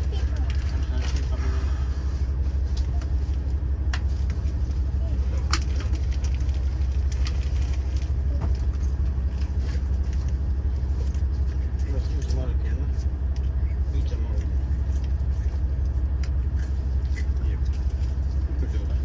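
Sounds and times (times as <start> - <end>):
low hum in train carriage: 0.0 - 19.0.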